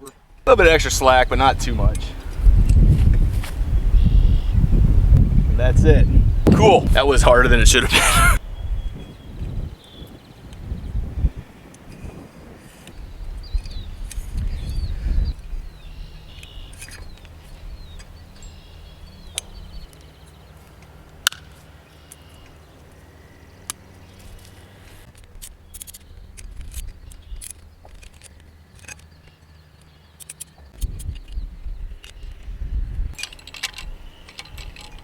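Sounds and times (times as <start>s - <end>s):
bird chirping: 6.0s - 20.8s.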